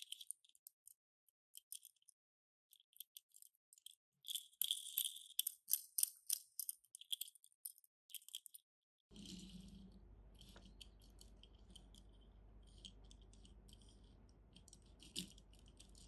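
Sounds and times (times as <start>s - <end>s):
toy cars clicking: 1.6s - 8.6s, 10.4s - 16.0s
low steady hum: 9.1s - 16.0s.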